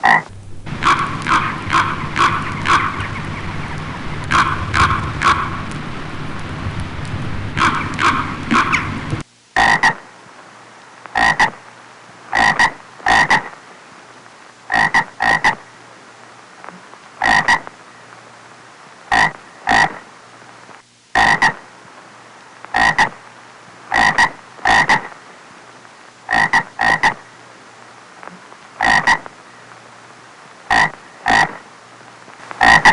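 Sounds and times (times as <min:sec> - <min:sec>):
frog croaking: 0:00.0 - 0:05.7, 0:07.5 - 0:09.0, 0:09.6 - 0:10.1, 0:11.1 - 0:11.6, 0:12.3 - 0:13.6, 0:14.7 - 0:15.7, 0:17.2 - 0:17.7, 0:19.1 - 0:20.1, 0:21.1 - 0:21.7, 0:22.7 - 0:23.2, 0:23.9 - 0:25.2, 0:26.2 - 0:27.3, 0:28.2 - 0:29.3, 0:30.7 - 0:31.7, 0:32.5 - 0:32.9
loud background noise: 0:00.0 - 0:09.3
steady hiss: 0:00.0 - 0:32.9.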